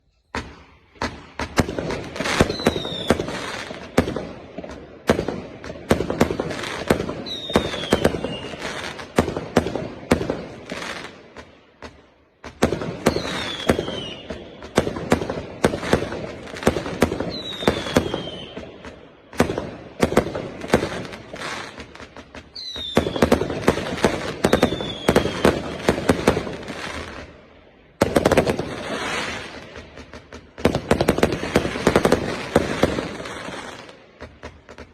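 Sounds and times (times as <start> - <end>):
fireworks launching and bursting: 0.0 - 34.9
falling firework whistles: 2.0 - 3.8, 6.6 - 9.0, 13.0 - 14.7, 17.0 - 18.7, 22.5 - 27.2.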